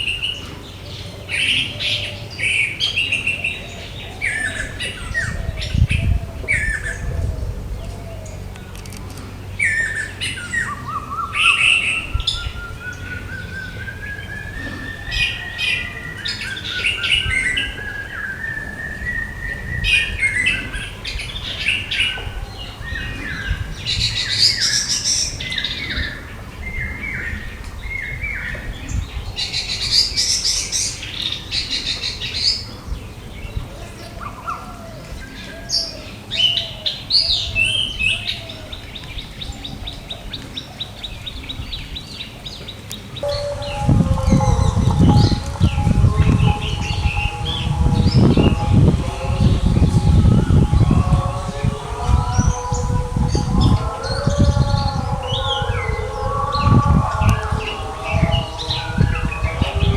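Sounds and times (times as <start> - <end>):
thrush singing: 0.0 - 59.9
thin rising tone: 43.2 - 58.0.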